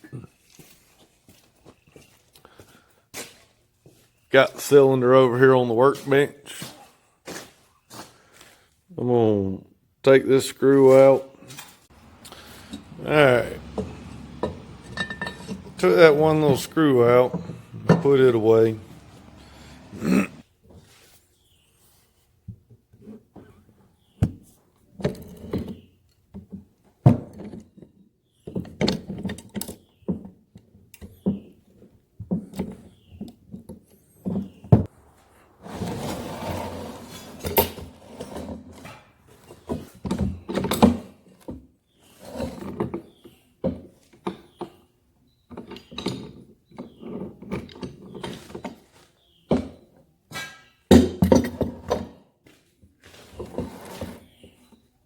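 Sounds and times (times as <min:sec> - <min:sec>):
metal parts clunking and knocking: 0:11.6 - 0:19.9
metal scraping: 0:12.0 - 0:20.4.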